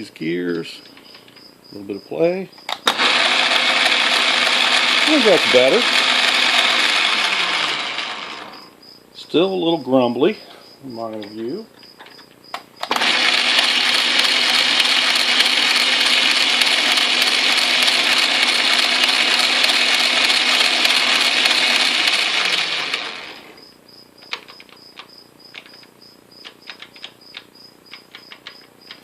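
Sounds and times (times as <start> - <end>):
motor hum: 2.7 - 8.8, 12.8 - 23.7.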